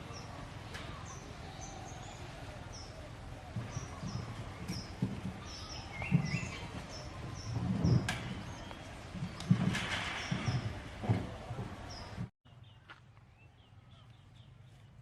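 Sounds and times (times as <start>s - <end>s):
small birds chirping: 0.0s - 15.0s
low thumps: 3.4s - 12.3s.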